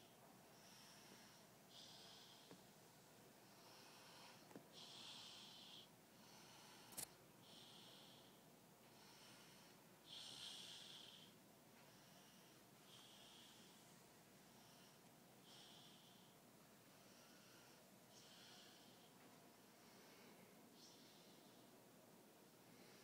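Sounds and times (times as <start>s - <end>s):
child snoring softly: 0.0s - 2.6s, 3.5s - 19.2s.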